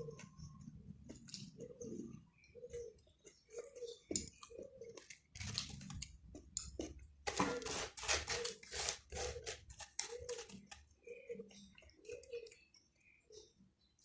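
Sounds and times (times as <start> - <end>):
person chewing and smacking: 0.1 - 7.3.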